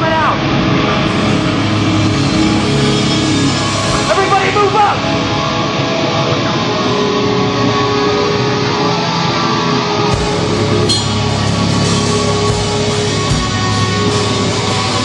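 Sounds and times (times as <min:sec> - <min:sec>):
deep low end: 0:00.0 - 0:07.8
distorted electric guitar: 0:00.0 - 0:15.0
sharp hit: 0:00.6 - 0:06.3, 0:10.2 - 0:15.0.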